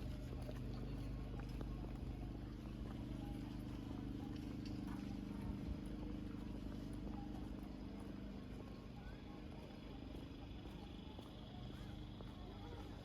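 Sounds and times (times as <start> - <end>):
low engine hum: 0.0 - 13.0.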